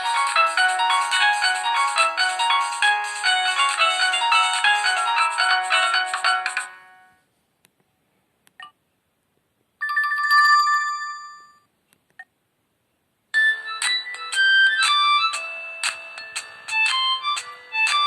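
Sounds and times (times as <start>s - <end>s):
phone ringtone melody: 0.0s - 7.1s, 9.8s - 11.6s, 13.4s - 18.0s.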